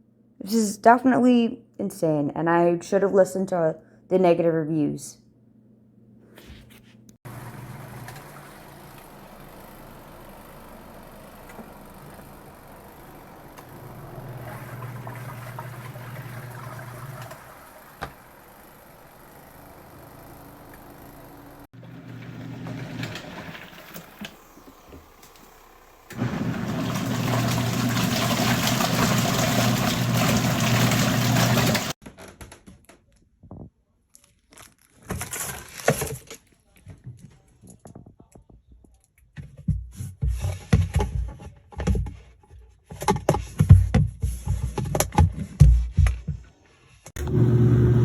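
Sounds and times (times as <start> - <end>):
washing machine running: 7.2 - 32.0, 47.1 - 48.0
water churning: 7.3 - 10.2, 13.0 - 19.7, 26.1 - 32.0.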